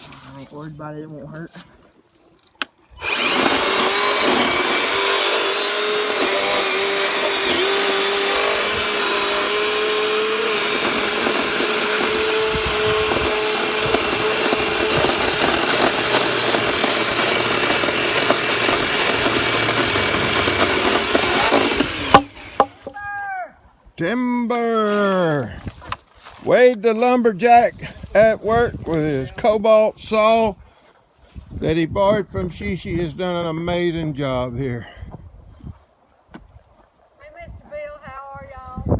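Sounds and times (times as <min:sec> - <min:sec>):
electric chainsaw motor whine: 0:03.0 - 0:22.9.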